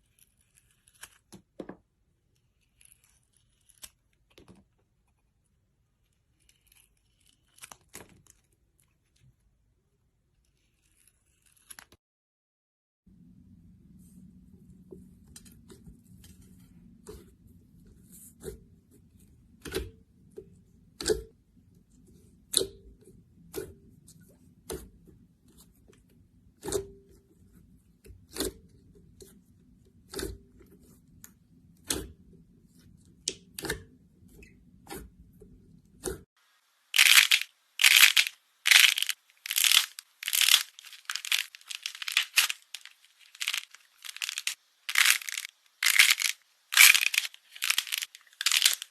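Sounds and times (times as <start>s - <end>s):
low steady hum: 13.1s - 36.0s
brittle material crunching: 37.0s - 48.9s.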